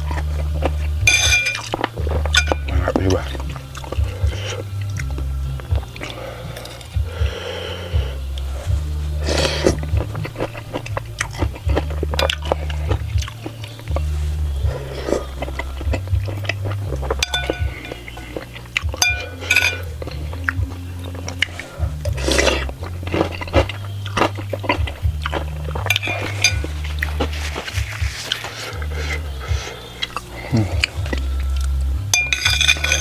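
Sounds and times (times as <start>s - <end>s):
background music with bass line: 0.0s - 33.0s
chewing: 0.0s - 33.0s
spoon clinking against bowl: 1.1s - 2.8s, 16.5s - 20.1s, 32.2s - 33.0s.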